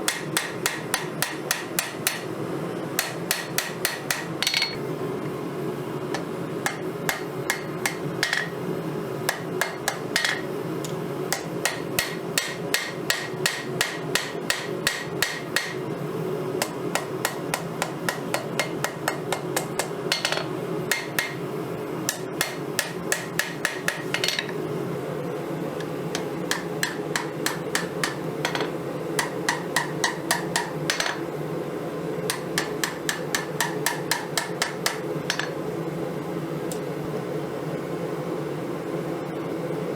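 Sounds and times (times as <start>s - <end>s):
hammer striking steel on anvil: 0.0s - 2.3s, 3.0s - 4.8s, 6.2s - 8.5s, 9.3s - 10.4s, 11.4s - 15.8s, 16.6s - 21.4s, 22.1s - 24.6s, 26.2s - 31.2s, 32.3s - 35.6s
steady low hum: 0.0s - 39.9s.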